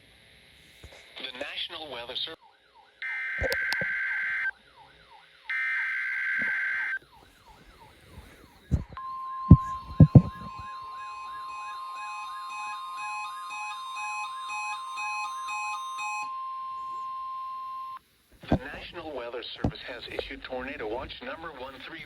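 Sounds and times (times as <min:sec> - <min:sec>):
rising and falling siren wail: 0:02.4 - 0:17.7
steady high alarm tone: 0:02.4 - 0:18.9.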